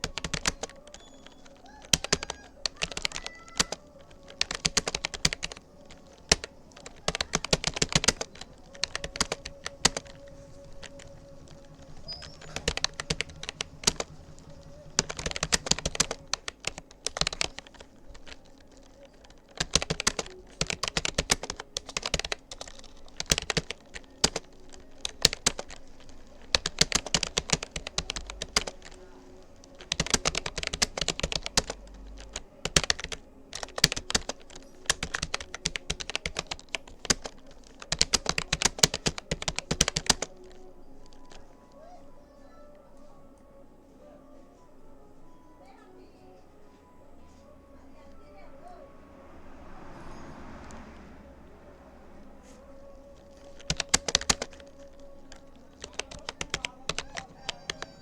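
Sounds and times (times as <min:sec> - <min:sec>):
computer keyboard typing: 0:00.0 - 0:41.9, 0:52.4 - 0:58.0.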